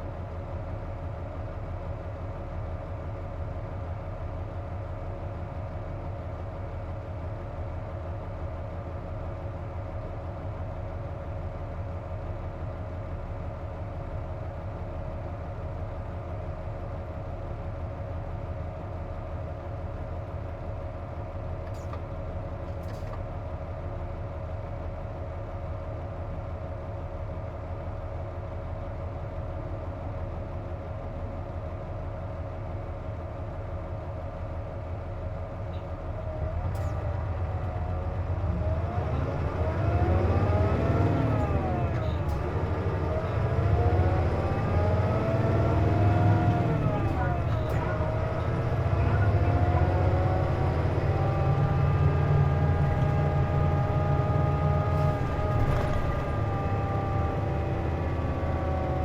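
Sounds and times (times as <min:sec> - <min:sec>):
bus engine whining: 0:34.6 - 0:59.0.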